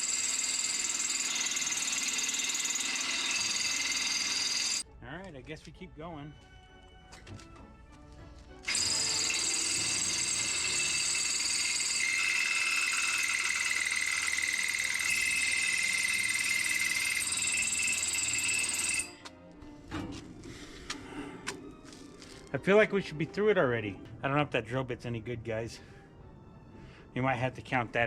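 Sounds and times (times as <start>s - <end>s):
power drill boring into metal: 0.0s - 4.8s, 8.6s - 19.2s.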